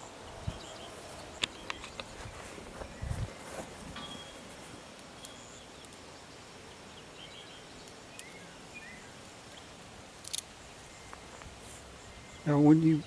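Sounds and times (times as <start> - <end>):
small sharp clicks: 10.2 - 10.5.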